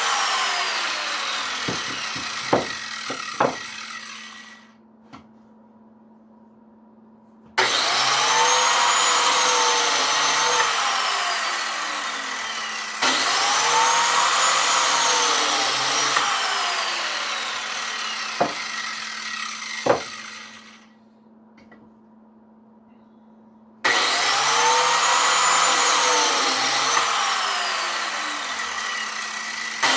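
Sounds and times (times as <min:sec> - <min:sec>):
power tool cutting wood: 0:00.0 - 0:04.7, 0:07.6 - 0:20.9, 0:23.8 - 0:29.9
sharp knocks: 0:01.6 - 0:03.7, 0:18.4 - 0:18.6, 0:19.8 - 0:20.2.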